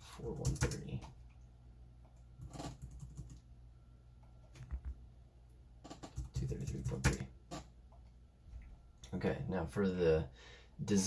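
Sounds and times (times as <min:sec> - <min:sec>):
man speaking: 0:00.0 - 0:01.1, 0:06.3 - 0:07.3, 0:09.0 - 0:11.0
keyboard and mouse clicks: 0:04.2 - 0:05.0.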